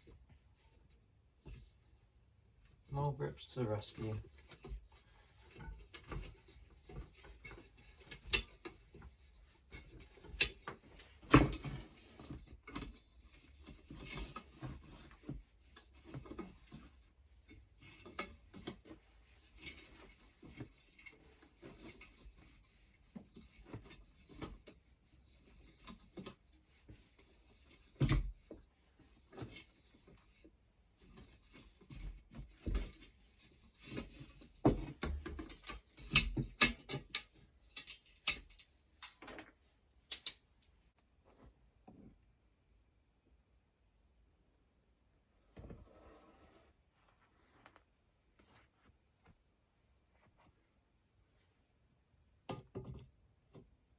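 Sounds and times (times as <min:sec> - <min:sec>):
hand tools clicking on bicycle spokes: 0:40.1 - 0:40.4.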